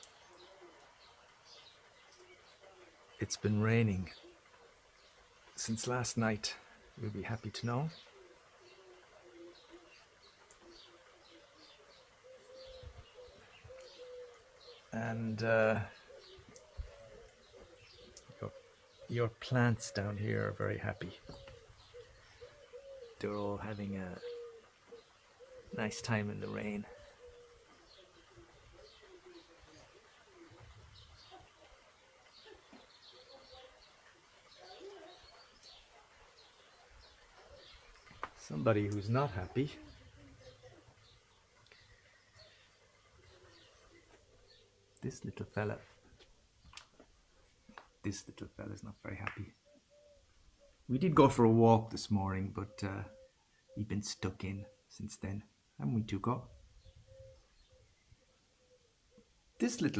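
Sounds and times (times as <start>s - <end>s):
rain hiss: 0.0s - 49.2s
birds chirping: 0.0s - 59.9s
low cooing: 8.0s - 14.9s, 21.2s - 23.2s, 24.2s - 25.8s, 26.9s - 38.1s.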